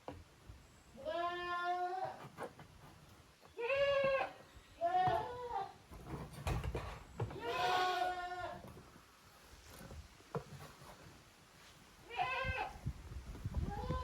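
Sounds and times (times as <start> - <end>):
young goats bleating: 0.9 - 2.3, 3.6 - 5.8, 7.3 - 8.7, 12.0 - 12.8.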